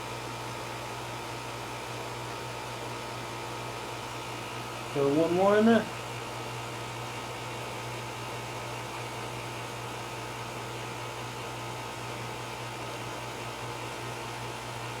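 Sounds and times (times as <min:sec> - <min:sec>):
low hum with hiss: 0:04.8 - 0:06.4.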